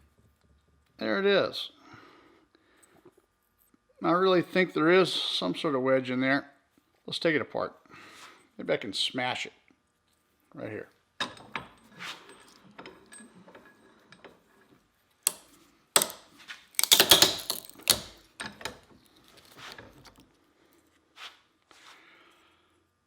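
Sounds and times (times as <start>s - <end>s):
metallic knocks and clatter: 16.8s - 18.1s.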